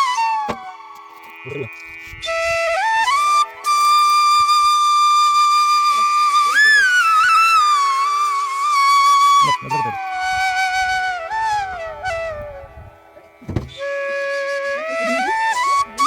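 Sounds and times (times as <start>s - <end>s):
slow flute-like melody: 0.0s - 1.3s, 2.1s - 13.2s.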